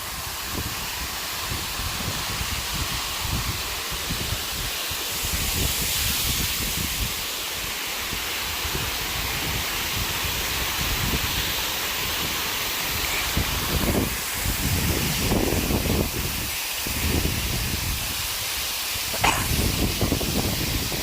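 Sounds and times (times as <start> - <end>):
waterfall rushing: 0.0 - 21.0
wind buffeting microphone: 12.1 - 18.2, 19.1 - 21.0.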